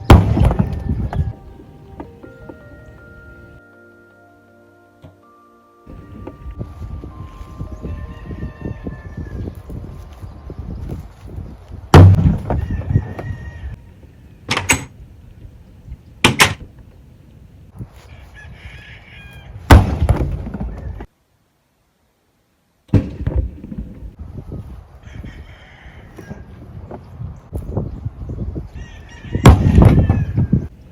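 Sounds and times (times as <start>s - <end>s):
hard impacts: 0.0s - 1.3s, 11.9s - 12.6s, 19.7s - 20.7s.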